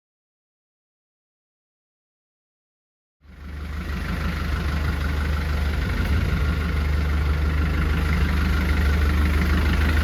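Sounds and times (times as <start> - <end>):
engine running: 3.2 - 10.0.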